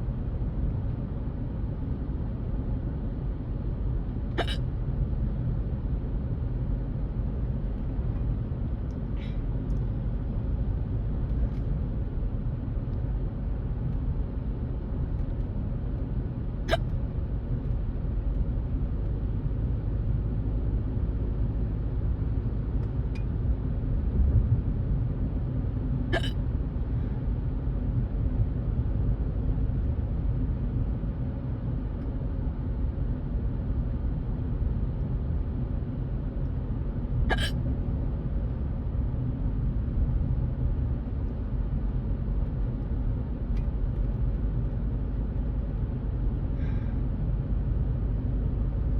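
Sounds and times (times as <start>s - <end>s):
person hiccuping: 4.4s - 4.6s, 26.1s - 26.4s, 37.3s - 37.6s.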